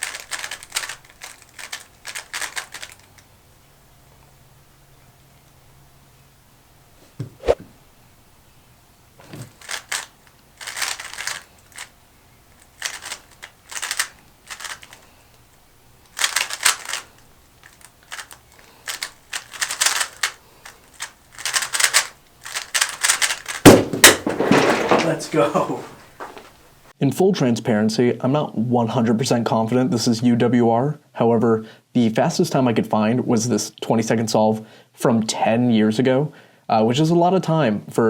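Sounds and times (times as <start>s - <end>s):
plastic cube clacking: 0.0s - 3.3s, 9.2s - 25.4s
loud thump: 23.7s - 25.6s.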